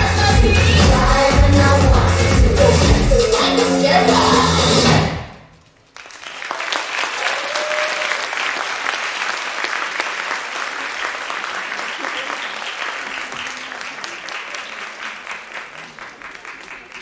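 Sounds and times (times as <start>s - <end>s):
audience applauding: 5.5s - 17.0s.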